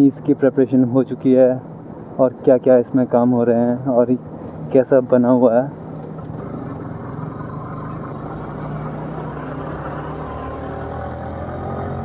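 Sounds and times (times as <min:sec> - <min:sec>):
motorcycle engine running: 0:06.0 - 0:12.0.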